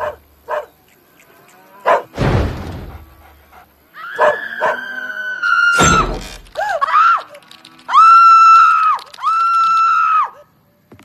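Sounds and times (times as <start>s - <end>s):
dog yelping: 0.0s - 0.7s, 1.9s - 2.1s, 4.2s - 5.0s
heavy thumps: 2.1s - 3.5s, 5.8s - 6.7s
dog whining: 4.2s - 5.0s.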